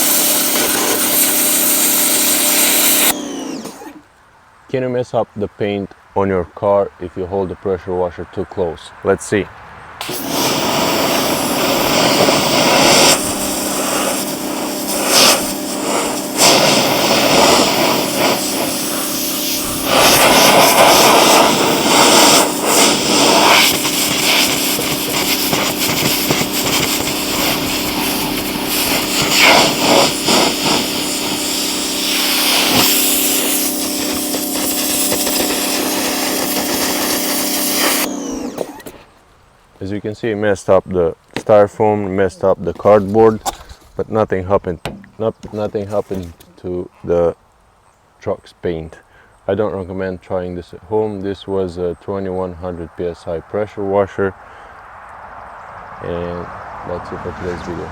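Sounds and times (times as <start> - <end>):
pressure washer spray hiss: 0.0 - 4.0, 10.0 - 38.9
pump motor hum: 0.0 - 4.1, 10.0 - 39.1.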